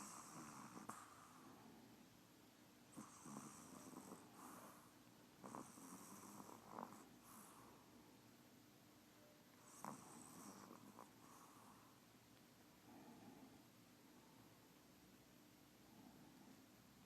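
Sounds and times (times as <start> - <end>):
dog snoring faintly: 0.0 - 2.0, 2.9 - 7.9, 9.5 - 12.0.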